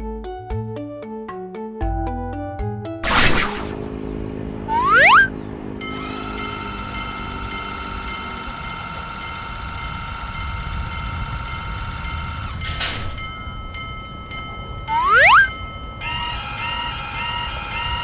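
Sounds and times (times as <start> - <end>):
rising whistle-like glide: 3.0 - 3.9, 4.7 - 5.3, 14.9 - 15.6
short whoosh: 3.0 - 3.9, 4.7 - 5.3
steady high tone: 4.7 - 5.3, 14.9 - 15.6
low train rumble: 5.3 - 14.9.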